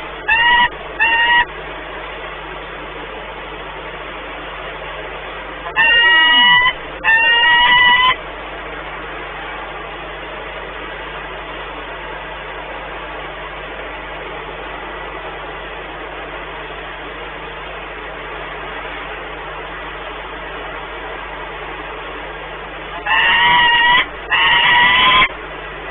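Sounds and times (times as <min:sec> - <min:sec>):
falcon wavering call: 0:00.0 - 0:01.6, 0:05.7 - 0:08.2, 0:22.9 - 0:25.4.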